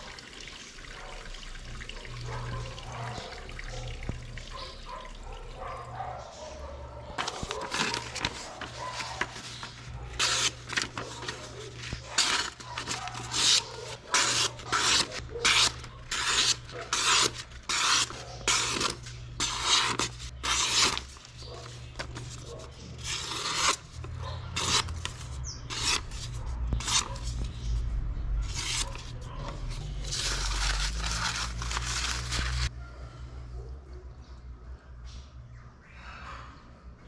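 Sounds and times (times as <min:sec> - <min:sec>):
rasp filing a knife: 0:10.2 - 0:11.4, 0:12.1 - 0:21.1, 0:23.0 - 0:23.9, 0:24.5 - 0:25.0.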